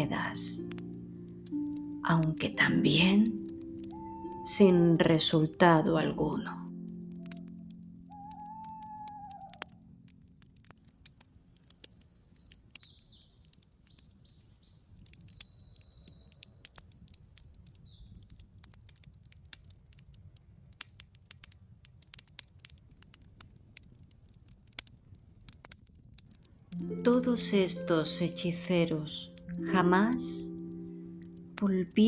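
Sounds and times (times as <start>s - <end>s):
campfire crackling and popping: 0.0s - 32.0s
birds chirping: 7.2s - 9.8s, 10.8s - 18.2s.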